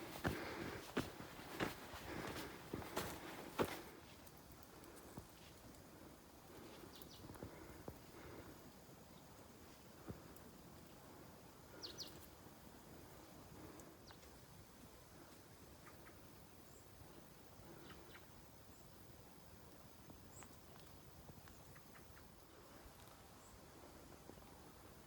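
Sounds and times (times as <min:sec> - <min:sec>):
faint bird chirps: 0:11.7 - 0:12.4, 0:15.6 - 0:19.0.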